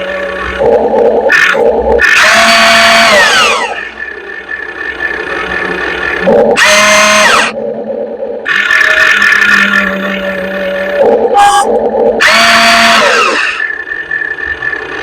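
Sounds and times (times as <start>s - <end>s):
electric motors whining: 0.0s - 15.0s
steady running hum: 0.0s - 15.0s.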